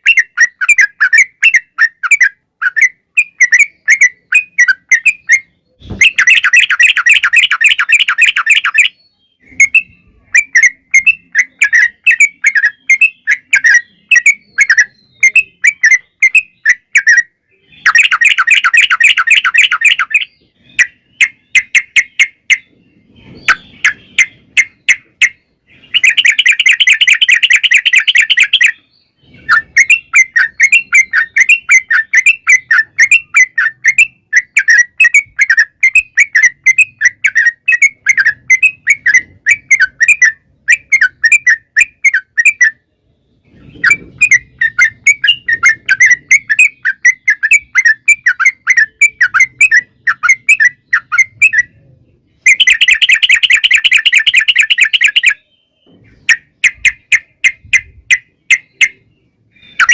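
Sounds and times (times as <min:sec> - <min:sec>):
bird rapid rattling trill: 0:00.0 - 0:17.2, 0:17.9 - 0:22.7, 0:23.4 - 0:28.8, 0:52.5 - 0:55.4
bird chattering song: 0:00.0 - 0:59.9.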